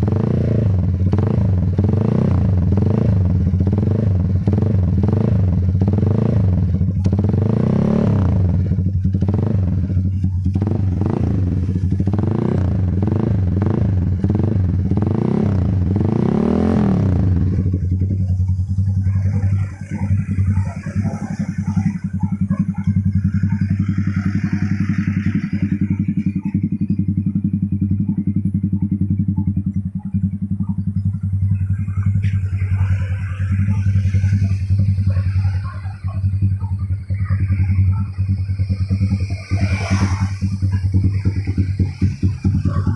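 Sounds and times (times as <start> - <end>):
motorcycle engine revving and idling: 0.0 - 42.9.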